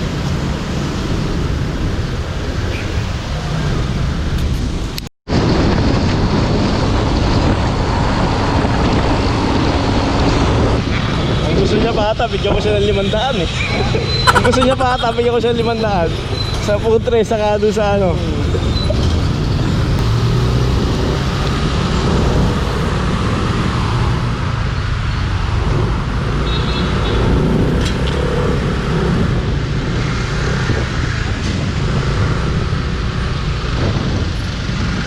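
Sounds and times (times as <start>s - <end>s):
wind rumbling on microphone: 0.0s - 15.4s, 27.3s - 35.0s
surrounding traffic: 0.0s - 35.0s.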